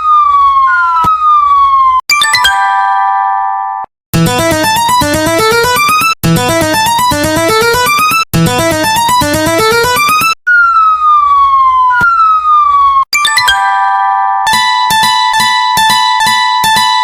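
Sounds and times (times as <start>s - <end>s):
tone sliding downward: 0.4s - 17.0s
bright keyboard notes: 2.1s - 10.4s, 13.2s - 17.0s
held chord: 4.2s - 10.4s, 13.5s - 17.0s.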